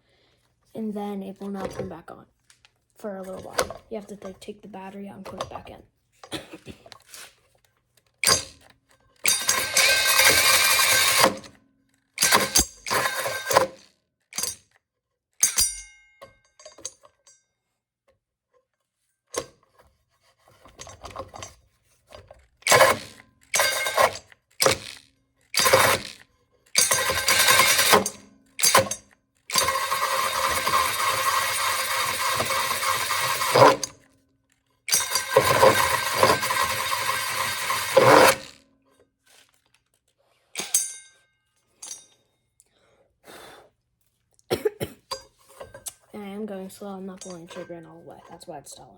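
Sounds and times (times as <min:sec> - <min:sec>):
cordless drill hole saw cutting wood: 0:09.2 - 0:11.5, 0:12.2 - 0:13.8, 0:22.6 - 0:26.2, 0:26.8 - 0:34.0, 0:34.9 - 0:38.6.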